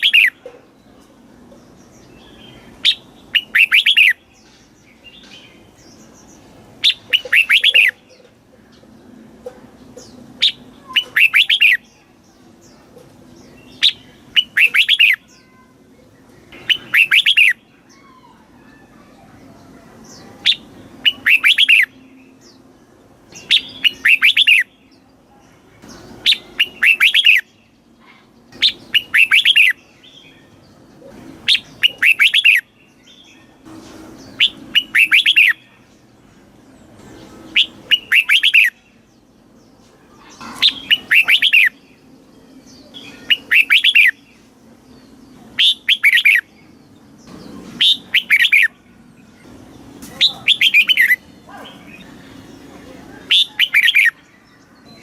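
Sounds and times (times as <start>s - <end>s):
bird singing whistled notes: 2.2s - 4.2s, 6.8s - 8.0s, 10.4s - 11.9s, 13.6s - 15.6s, 16.6s - 18.4s, 20.2s - 22.5s, 23.4s - 24.8s, 26.0s - 27.5s, 28.6s - 30.5s, 31.4s - 33.5s, 34.2s - 35.8s, 37.5s - 38.8s, 40.6s - 44.4s, 45.6s - 46.6s, 47.8s - 48.8s, 50.2s - 51.3s, 53.3s - 55.0s.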